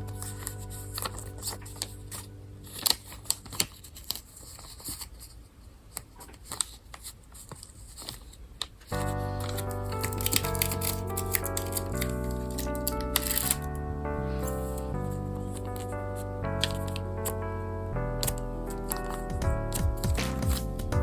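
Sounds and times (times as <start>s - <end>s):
background music: 0.0s - 3.6s, 9.0s - 21.0s
plastic packaging crinkling: 0.0s - 5.4s, 6.0s - 13.7s, 18.8s - 20.9s.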